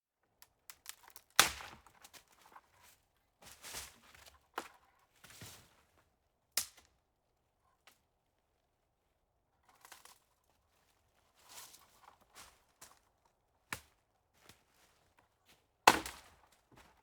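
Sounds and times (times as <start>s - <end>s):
footsteps crunching on forest floor: 2.2s - 4.3s.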